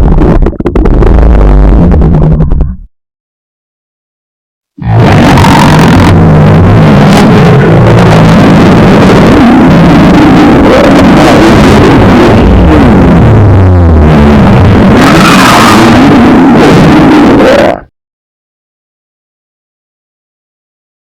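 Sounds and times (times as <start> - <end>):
stomach growling: 0.0 - 2.9, 4.8 - 17.9.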